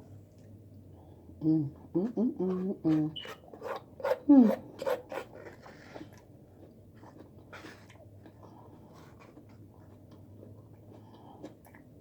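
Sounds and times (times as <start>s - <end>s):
low steady hum: 0.0s - 12.0s
person chewing food: 5.0s - 12.0s.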